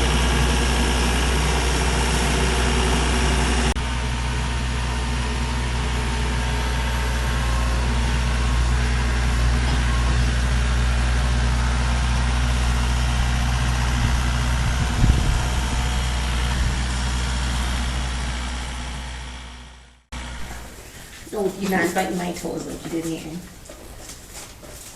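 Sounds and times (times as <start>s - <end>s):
engine knock: 0.0s - 19.8s
diesel tractor engine running: 0.0s - 24.9s.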